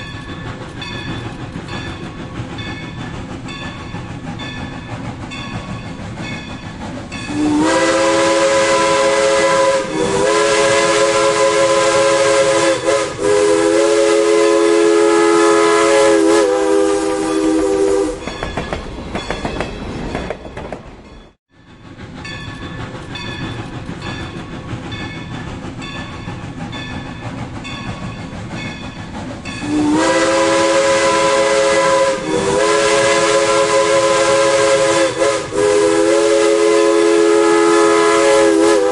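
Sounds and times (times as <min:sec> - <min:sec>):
steam locomotive chime whistle: 0:00.0 - 0:19.6, 0:21.6 - 0:38.9
train rumbling on rails: 0:00.0 - 0:38.9.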